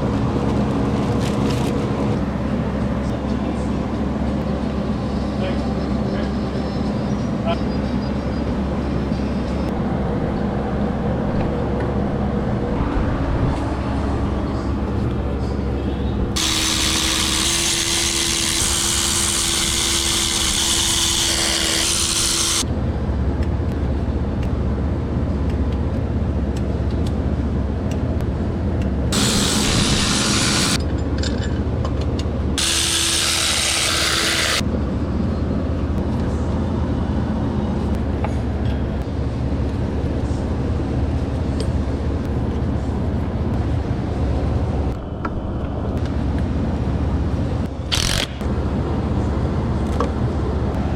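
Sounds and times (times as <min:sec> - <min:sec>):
constant low hum: 0:00.0 - 0:50.9
power tool hiss and whine: 0:16.3 - 0:22.7, 0:29.1 - 0:30.8, 0:32.6 - 0:34.6.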